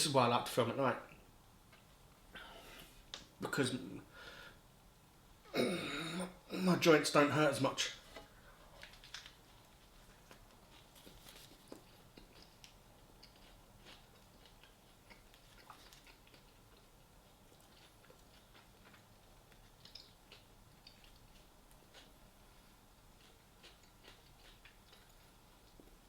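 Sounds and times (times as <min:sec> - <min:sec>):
person chewing quietly: 0:07.9 - 0:26.0.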